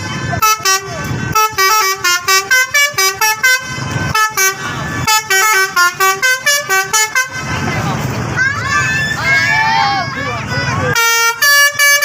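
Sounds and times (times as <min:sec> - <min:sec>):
musical air horn melodic runs: 0:00.4 - 0:07.5, 0:11.0 - 0:12.0.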